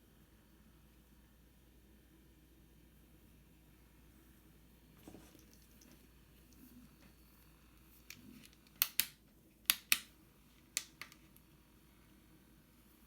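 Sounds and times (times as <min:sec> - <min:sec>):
sharp clicks: 0:08.0 - 0:10.1.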